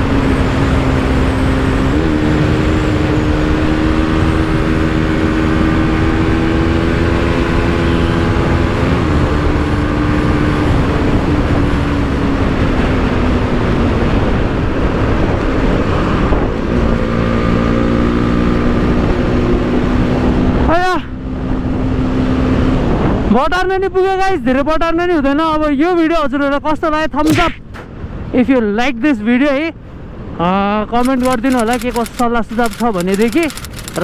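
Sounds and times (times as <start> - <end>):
motorcycle engine running: 0.0 - 22.2
wind rush: 0.0 - 24.3, 27.2 - 32.6.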